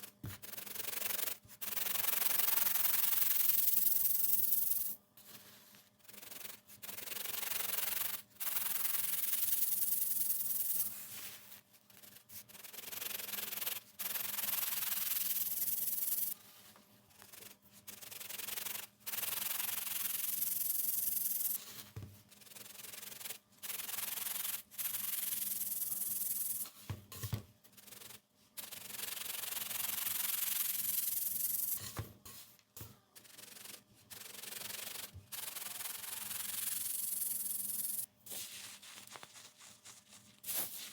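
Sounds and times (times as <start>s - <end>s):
baked baking soda being crushed: 38.3s - 40.9s.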